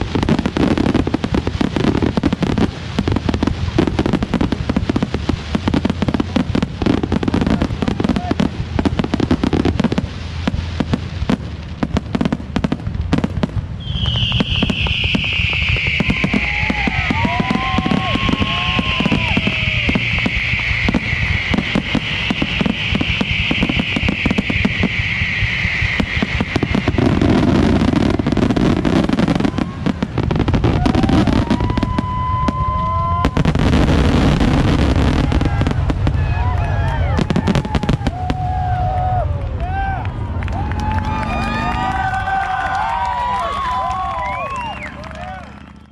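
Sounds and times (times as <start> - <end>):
fireworks bangs and crackles: 0.0 - 45.9
short firework whistles: 13.8 - 39.8, 40.6 - 45.9
long high falling hiss: 14.3 - 29.7.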